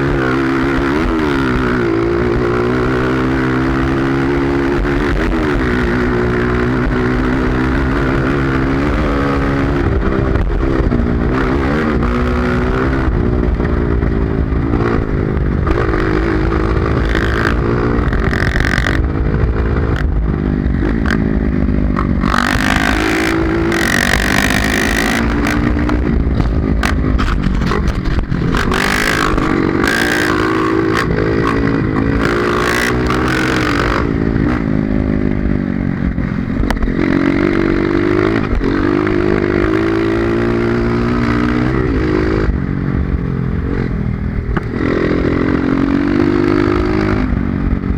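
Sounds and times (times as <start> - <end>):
dirt bike engine revving: 0.0 - 42.6
clattering and scraping on terrain: 21.9 - 30.3.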